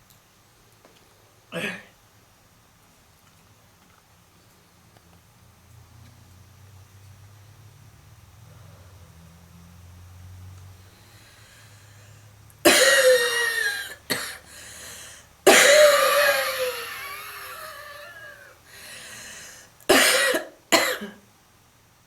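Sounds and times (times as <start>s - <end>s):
person coughing heavily: 1.5s - 1.9s, 12.6s - 14.7s, 15.5s - 18.5s, 19.9s - 21.2s
noisy in-breath: 8.4s - 9.3s, 10.8s - 12.4s, 14.2s - 19.8s.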